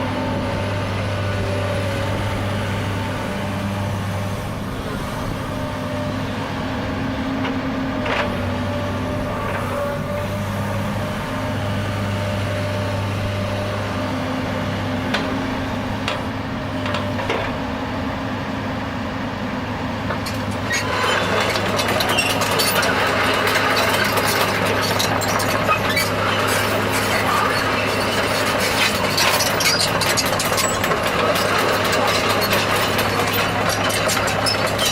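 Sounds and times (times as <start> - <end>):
excavator diesel engine running: 0.0 - 34.9
rapid clicks and clanks: 20.2 - 34.9.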